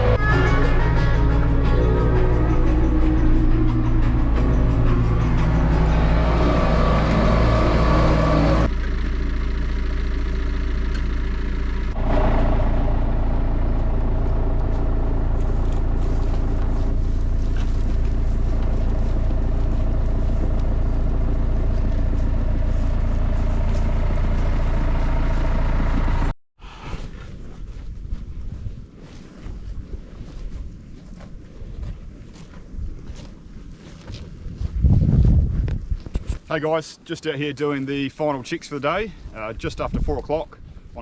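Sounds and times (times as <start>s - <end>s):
tractor engine running: 0.0s - 26.4s.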